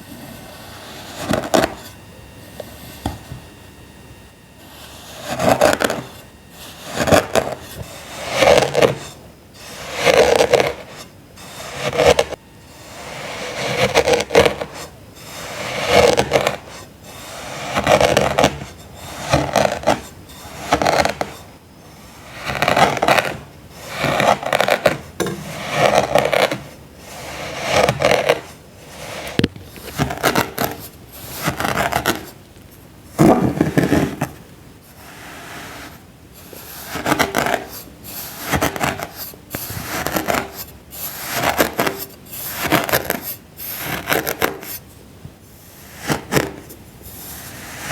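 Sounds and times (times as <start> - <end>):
hand tool cutting into sand: 4.6 - 21.4, 22.0 - 32.3, 35.0 - 44.8.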